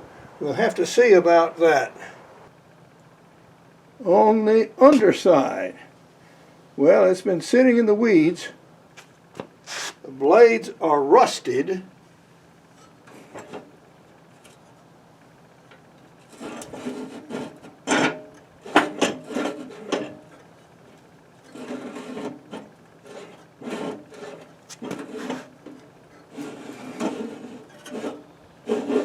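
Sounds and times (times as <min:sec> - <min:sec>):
metal scraping and rubbing: 0:16.2 - 0:29.0.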